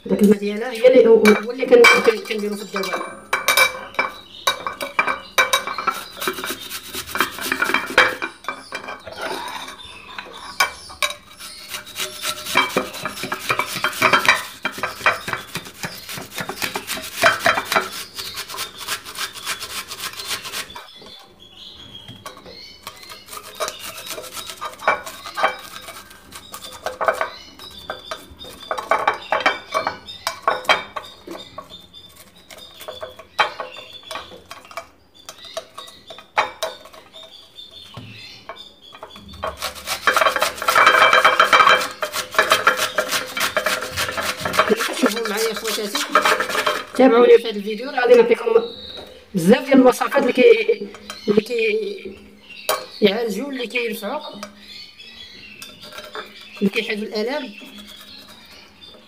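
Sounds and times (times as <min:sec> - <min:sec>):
onion grated on grater: 0:05.7 - 0:08.3, 0:11.2 - 0:20.9, 0:22.8 - 0:29.9, 0:39.2 - 0:47.0.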